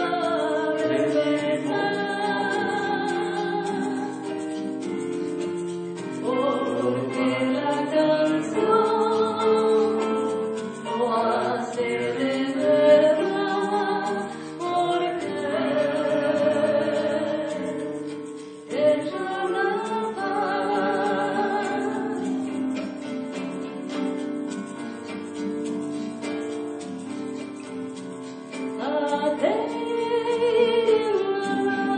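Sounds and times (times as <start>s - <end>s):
group singing: 0.0s - 4.4s, 6.2s - 22.6s.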